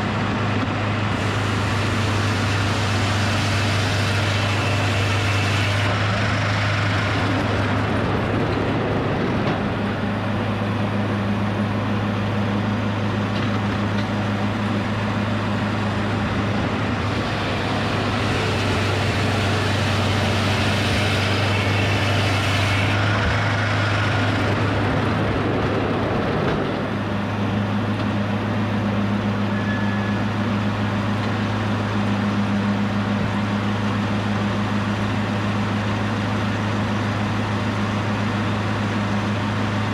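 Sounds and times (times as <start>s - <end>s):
sawmill engine running: 0.0s - 39.9s
hiss and clatter of mill: 0.4s - 11.4s, 13.0s - 28.2s.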